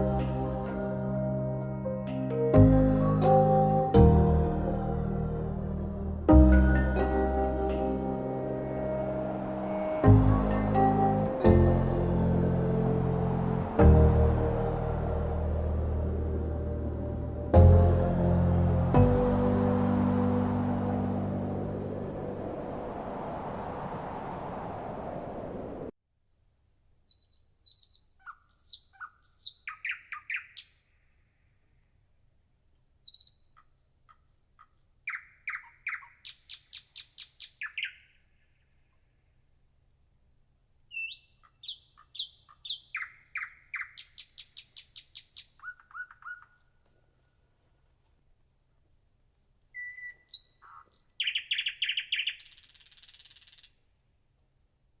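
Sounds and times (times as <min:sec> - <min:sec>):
songbird trilling: 0:27.1 - 0:30.7, 0:32.5 - 0:38.1, 0:40.9 - 0:46.8, 0:48.5 - 0:53.8.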